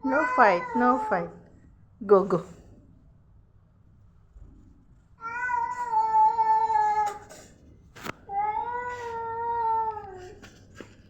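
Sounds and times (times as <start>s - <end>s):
cat yowling: 5.2s - 7.2s, 8.3s - 10.3s.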